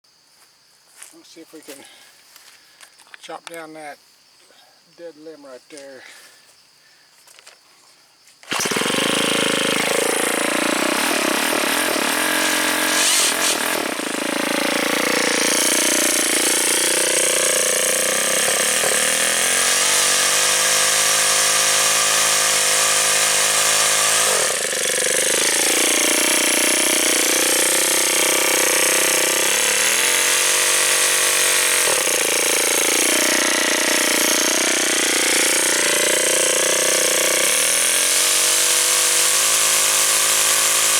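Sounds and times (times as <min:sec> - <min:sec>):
chainsaw attachment engine revving: 0:08.4 - 0:40.9.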